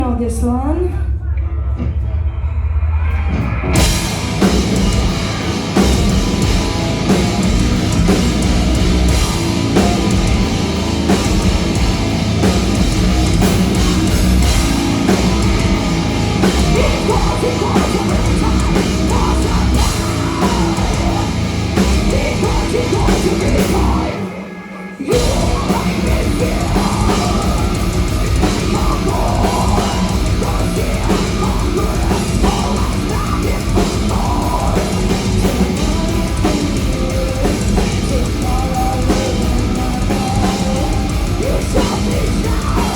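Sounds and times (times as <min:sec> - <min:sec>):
heavy metal band playing: 0:01.6 - 0:42.9
driving drum kit: 0:03.0 - 0:42.9.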